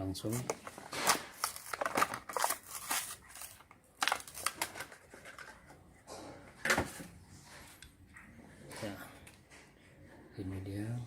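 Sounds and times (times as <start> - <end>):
packaging being torn: 0.3 - 5.0.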